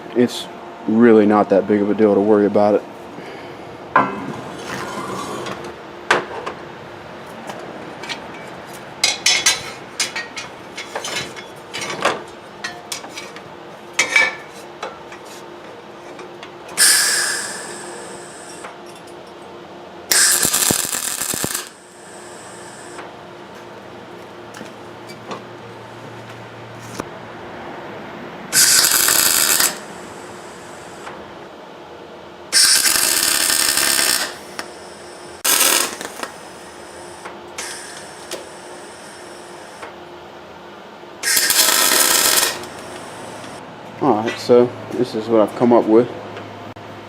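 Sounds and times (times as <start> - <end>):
faint steady hum: 8.0 - 43.7
arc welder crackling hiss: 16.8 - 18.8, 20.1 - 23.0, 28.5 - 31.1, 32.5 - 39.8, 41.2 - 43.6.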